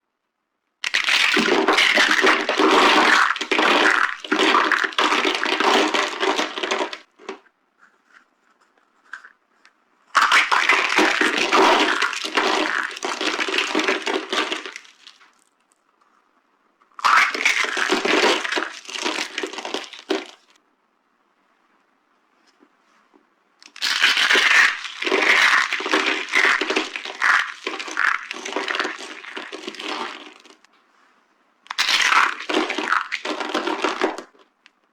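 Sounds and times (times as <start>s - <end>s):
soap crunching and crackling: 0.8s - 7.4s, 10.1s - 15.8s, 16.9s - 20.6s, 23.6s - 30.7s, 31.7s - 34.8s.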